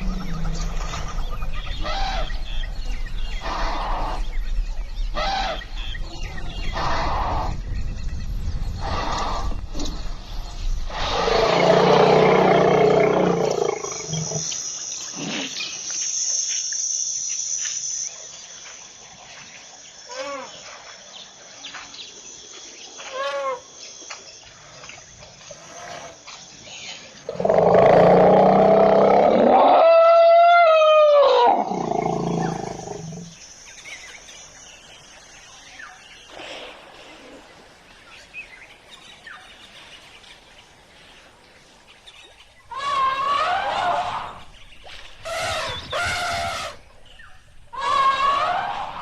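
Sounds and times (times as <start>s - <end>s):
elephant trumpeting: 42.7s - 44.3s, 47.7s - 49.0s.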